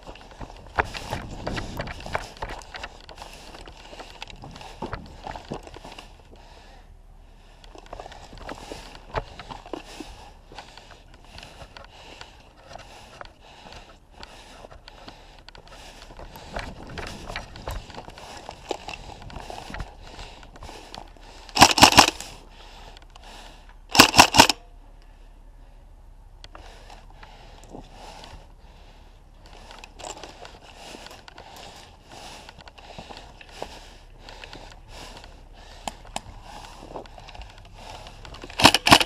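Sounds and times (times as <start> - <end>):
footsteps crunching on dirt: 0.0 - 6.6, 7.6 - 22.6, 29.4 - 39.0
airsoft gun full-auto bursts: 21.5 - 22.3, 23.9 - 24.6, 38.6 - 39.0.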